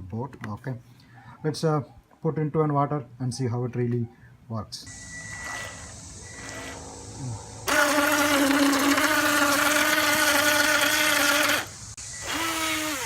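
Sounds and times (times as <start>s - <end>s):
electric boat motor whining: 4.9s - 13.0s.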